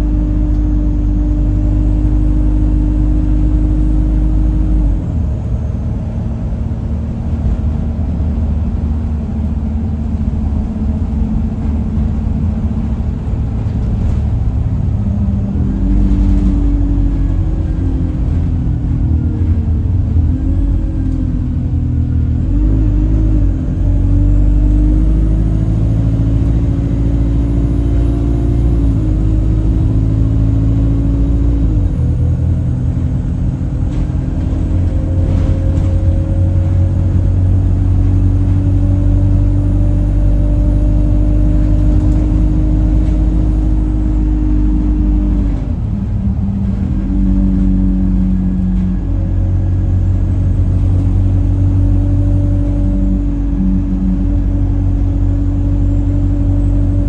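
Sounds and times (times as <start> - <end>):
bus engine rumble: 0.0 - 57.0
horn-like droning tone: 50.3 - 57.0.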